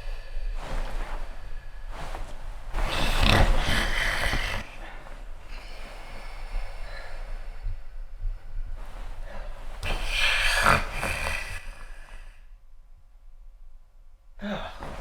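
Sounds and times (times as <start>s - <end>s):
breaths: 0.0s - 12.6s, 14.4s - 15.0s
man snoring: 9.8s - 11.9s.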